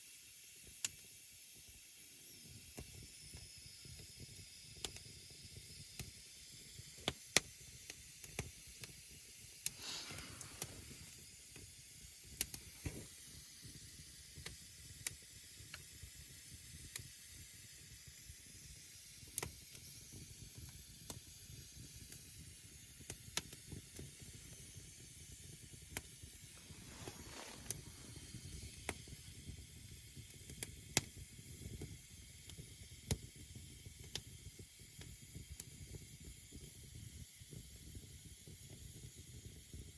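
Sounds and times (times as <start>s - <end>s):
fire hissing: 5.0s - 17.0s, 19.0s - 32.8s
campfire crackling and popping: 7.0s - 8.9s, 9.6s - 11.6s, 12.3s - 15.8s, 22.0s - 33.4s.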